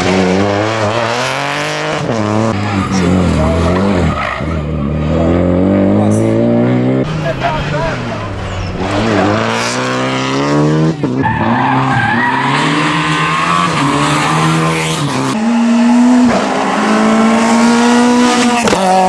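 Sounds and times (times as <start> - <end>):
car engine revving high: 0.0 - 19.0.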